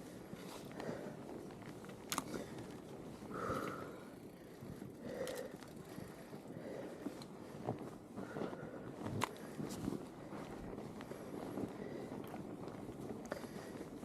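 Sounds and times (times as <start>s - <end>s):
bike tyres crunching on snow: 0.0s - 14.0s
bike clicks and knocks: 0.7s - 6.3s.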